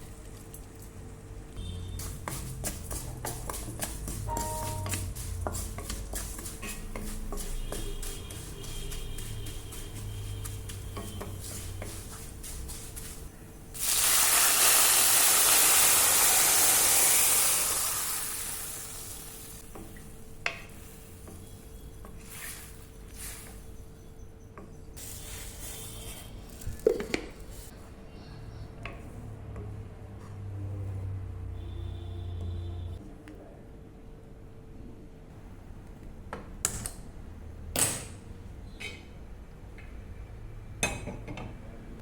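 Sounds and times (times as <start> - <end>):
stirring in a pan: 1.6 - 13.9, 18.3 - 24.0
food sizzling in hot oil: 13.8 - 19.6.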